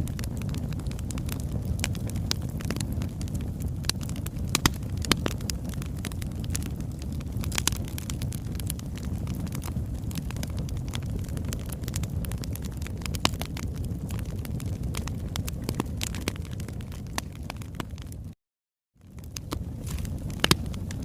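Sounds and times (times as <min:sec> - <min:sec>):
fire low rumble: 0:00.0 - 0:18.4, 0:19.0 - 0:21.0
wood fire crackling and popping: 0:00.0 - 0:18.4, 0:19.0 - 0:21.0.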